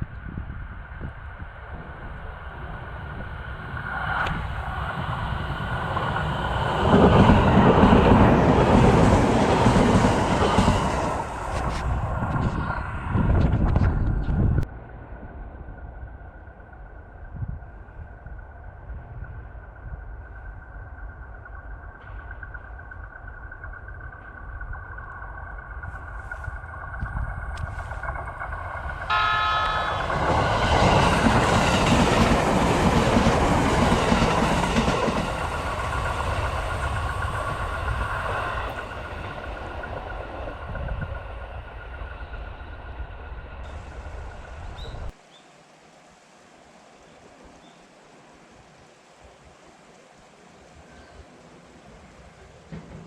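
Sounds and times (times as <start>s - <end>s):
train rumbling and clattering past: 0.0s - 45.2s, 51.4s - 53.0s
crossing warning bell: 28.8s - 32.0s
train horn: 29.1s - 31.4s.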